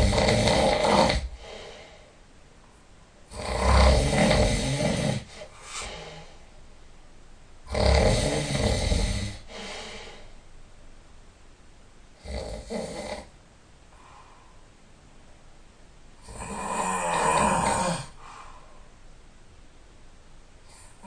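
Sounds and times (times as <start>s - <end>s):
person snoring: 0.0s - 1.9s, 3.3s - 6.3s, 7.7s - 10.2s, 12.2s - 13.3s, 16.2s - 18.2s
soft breath: 1.2s - 2.3s, 5.2s - 6.7s, 9.0s - 10.5s, 13.9s - 14.8s, 18.1s - 19.1s.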